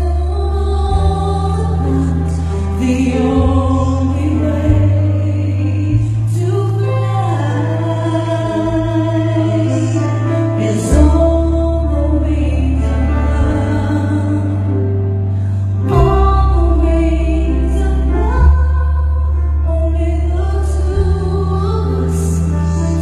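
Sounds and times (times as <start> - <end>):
woman singing: 0.0 - 15.0, 15.8 - 23.0
sustained bass notes: 0.0 - 23.0.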